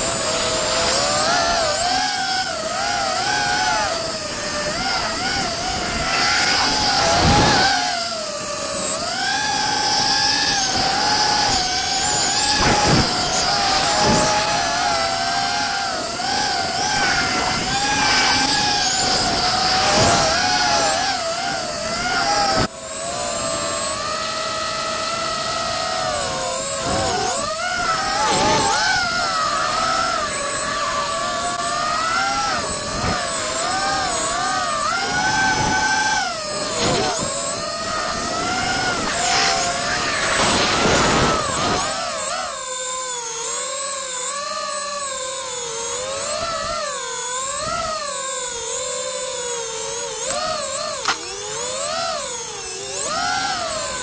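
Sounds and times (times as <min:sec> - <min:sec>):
quadcopter motors whining: 0:00.0 - 0:54.0.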